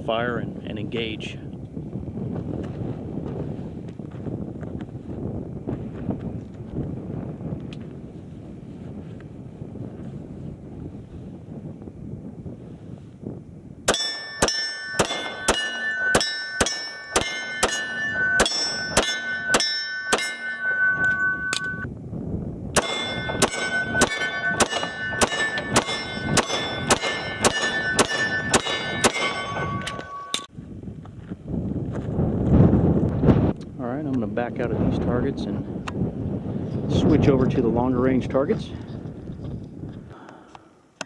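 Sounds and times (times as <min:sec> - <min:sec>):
pistol shots: 0:13.9 - 0:20.9, 0:22.8 - 0:30.4
steel targets clanging: 0:13.9 - 0:21.9, 0:22.8 - 0:30.5.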